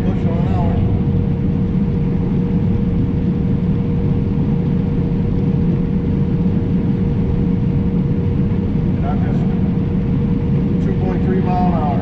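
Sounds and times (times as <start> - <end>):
combine harvester rumbling: 0.0 - 5.4
constant machine whine: 0.0 - 12.0.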